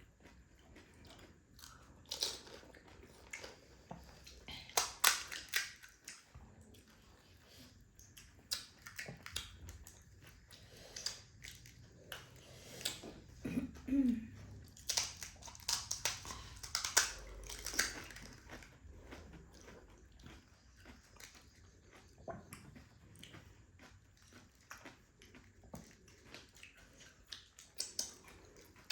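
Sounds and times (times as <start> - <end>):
chewing and crunching crisp shells: 0.0 - 13.4, 14.3 - 28.9.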